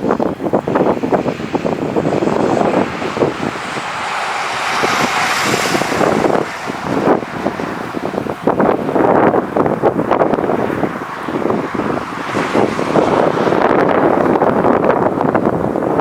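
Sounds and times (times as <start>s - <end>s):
jet airliner passing: 0.0s - 16.0s
wind buffeting microphone: 0.0s - 16.0s.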